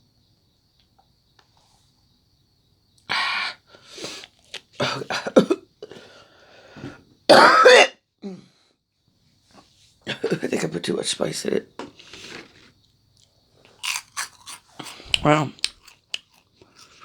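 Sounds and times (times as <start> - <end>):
woman coughing: 4.8 - 5.6, 7.3 - 8.0.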